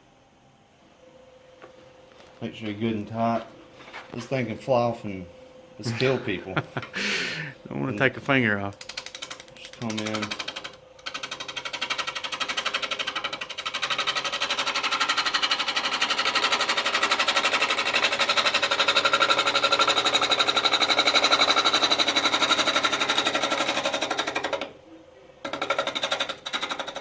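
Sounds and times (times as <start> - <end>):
lathe gouge chattering on wood: 8.8 - 24.7, 25.4 - 27.0.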